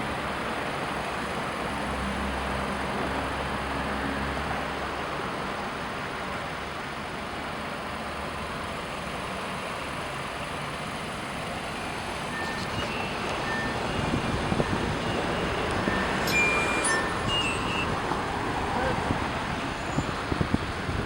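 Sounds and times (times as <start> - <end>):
rushing vehicle noise: 0.0 - 21.0
short high tones: 12.2 - 19.0.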